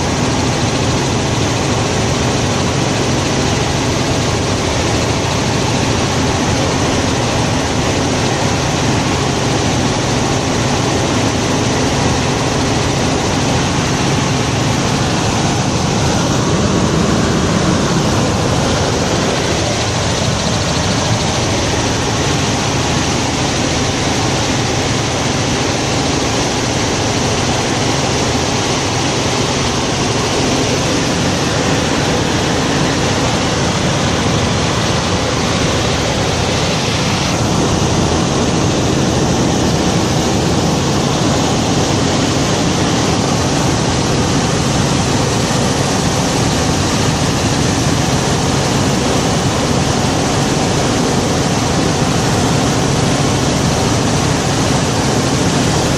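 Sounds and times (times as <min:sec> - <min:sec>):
helicopter engine and rotor drone: 0:00.0 - 0:55.9
rushing air noise: 0:11.3 - 0:55.9.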